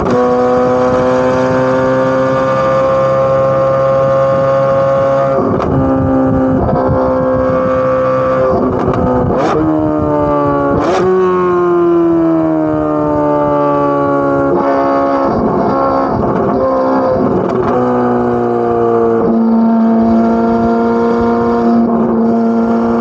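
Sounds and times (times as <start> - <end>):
car exhaust at high revs: 0.0 - 23.0
exhaust crackles and pops: 5.3 - 7.1, 8.3 - 9.7, 14.6 - 18.5.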